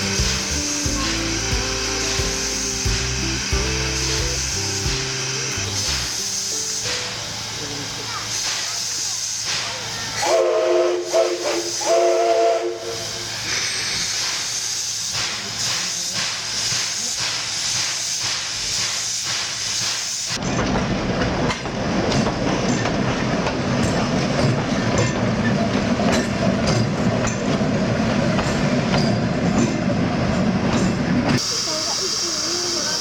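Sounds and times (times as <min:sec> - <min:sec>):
steam hissing: 0:00.0 - 0:33.0
train rumbling on rails: 0:00.0 - 0:33.0
steam locomotive whistle: 0:10.1 - 0:14.2.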